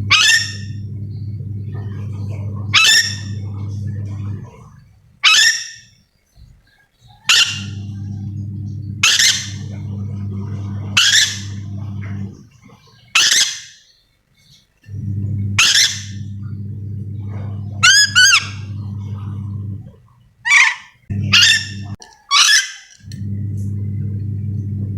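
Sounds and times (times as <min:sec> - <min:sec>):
steady low hum: 0:00.0 - 0:05.2, 0:07.1 - 0:13.1, 0:14.8 - 0:20.4, 0:21.0 - 0:22.0, 0:23.0 - 0:24.9
parrot screeching: 0:00.1 - 0:00.7, 0:02.7 - 0:03.4, 0:05.2 - 0:05.9, 0:07.2 - 0:07.8, 0:09.0 - 0:09.7, 0:11.0 - 0:11.7, 0:13.1 - 0:13.8, 0:15.6 - 0:16.2, 0:20.5 - 0:23.0.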